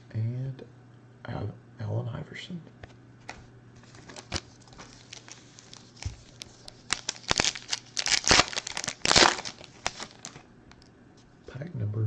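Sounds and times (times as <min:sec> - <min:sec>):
foil wrapper crinkling and tearing: 0:03.8 - 0:10.4.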